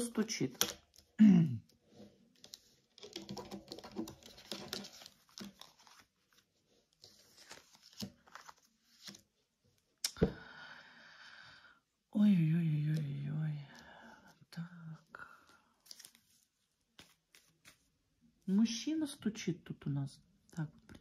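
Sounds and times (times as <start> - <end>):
cards rustling and clicking: 0.3 - 9.4, 15.7 - 18.0.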